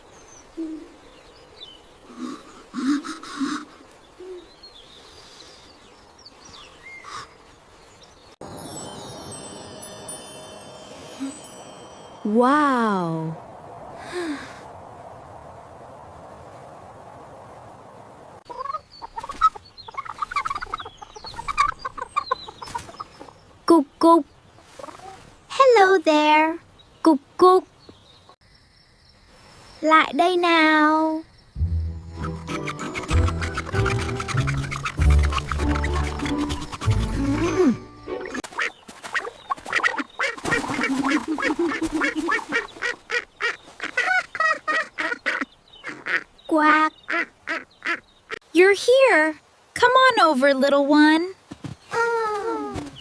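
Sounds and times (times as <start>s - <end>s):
hens clucking: 18.5s - 23.4s, 32.2s - 37.4s, 38.1s - 46.3s
duck quacking rapidly: 39.7s - 46.3s.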